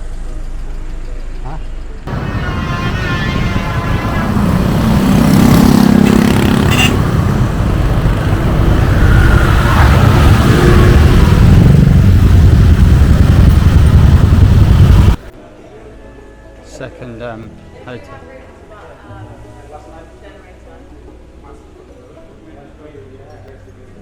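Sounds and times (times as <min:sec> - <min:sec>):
vehicle low rumble: 0:00.0 - 0:15.3.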